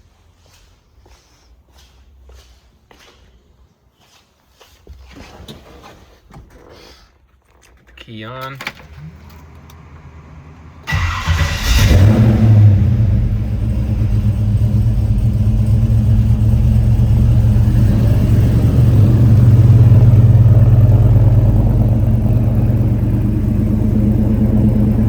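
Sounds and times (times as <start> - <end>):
car engine idling: 8.8 - 25.0.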